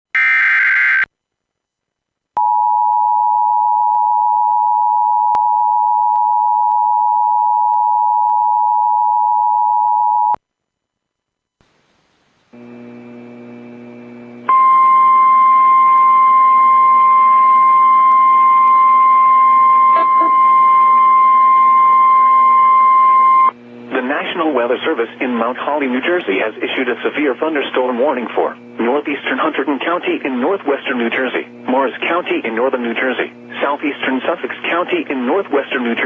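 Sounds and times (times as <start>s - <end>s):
radio static: 0.2s - 1.1s, 19.8s - 21.8s, 23.4s - 36.0s
faint hum: 0.2s - 36.0s
steady warning alarm tone: 14.5s - 23.6s.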